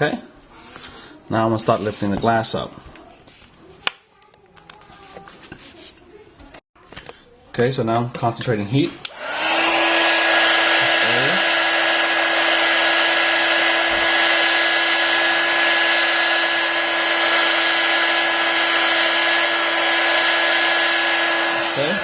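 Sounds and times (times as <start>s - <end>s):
heat gun blowing: 9.0s - 22.0s.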